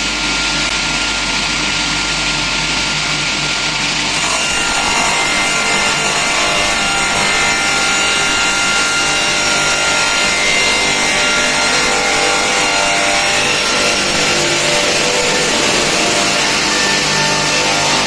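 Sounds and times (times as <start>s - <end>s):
rip-saw sawing wood: 4.1s - 18.0s.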